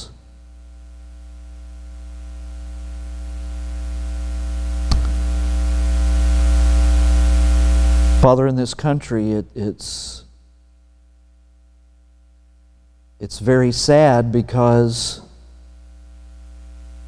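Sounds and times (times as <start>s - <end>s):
electrical mains hum and hiss: 0.0s - 17.0s
sharp click: 4.9s - 5.2s.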